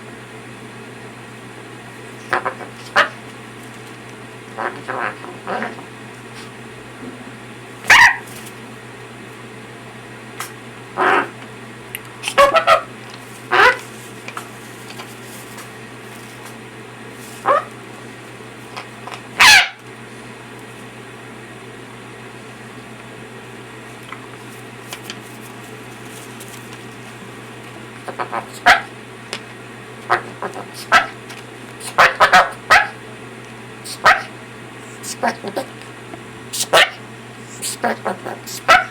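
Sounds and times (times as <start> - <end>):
parrot calling: 2.2 - 3.3, 4.5 - 5.9, 7.8 - 8.3, 10.9 - 11.4, 12.2 - 13.9, 17.4 - 17.8, 19.4 - 19.8, 28.0 - 29.0, 30.0 - 31.2, 31.8 - 33.0, 33.9 - 35.8, 36.6 - 38.9.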